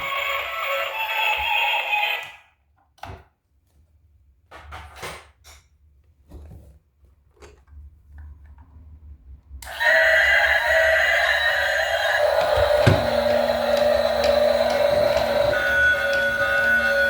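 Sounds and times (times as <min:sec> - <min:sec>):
music: 0:10.0 - 0:17.0.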